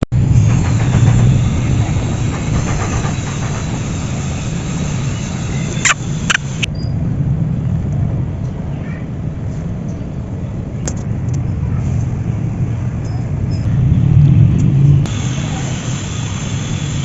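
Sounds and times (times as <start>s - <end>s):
sharp clicks: 5.7s - 6.7s.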